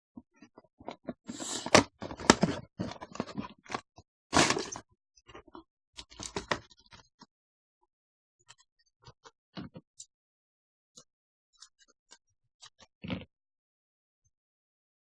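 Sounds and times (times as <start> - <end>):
plastic and cardboard packaging tearing: 4.4 - 4.8.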